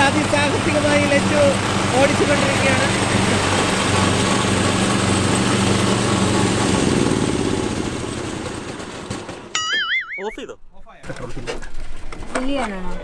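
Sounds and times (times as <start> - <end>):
lawn mower engine running: 0.0 - 10.1.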